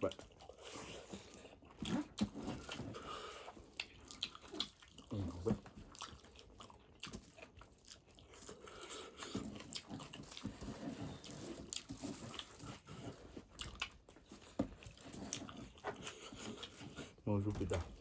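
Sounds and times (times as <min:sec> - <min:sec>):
person chewing and crunching: 0:00.0 - 0:18.0.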